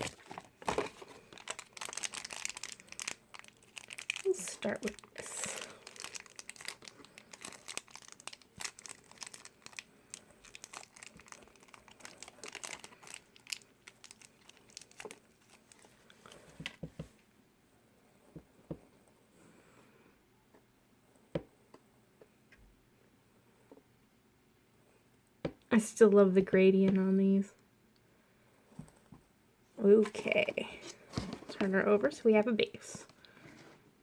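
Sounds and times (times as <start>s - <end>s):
plastic wrapper crinkling and tearing: 0.0s - 16.4s.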